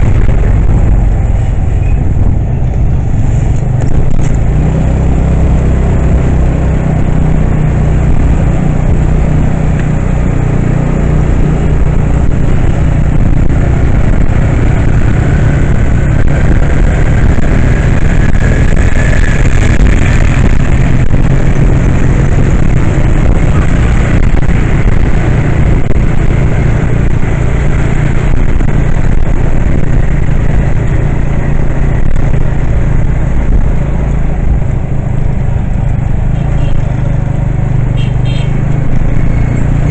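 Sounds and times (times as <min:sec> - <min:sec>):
vehicle engine and road rumble: 0:00.0 - 0:39.9.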